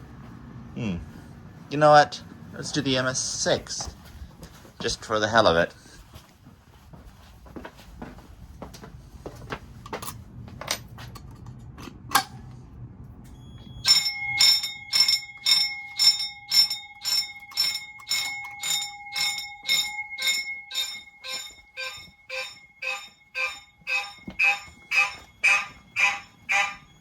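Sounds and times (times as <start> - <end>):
pulsed fire alarm: 13.2 - 27.0.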